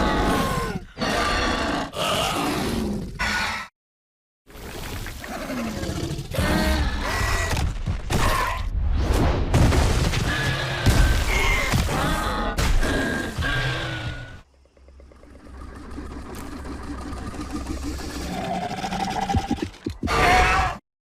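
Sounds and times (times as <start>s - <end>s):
shrieking snarling creature calls: 13.1s - 20.8s.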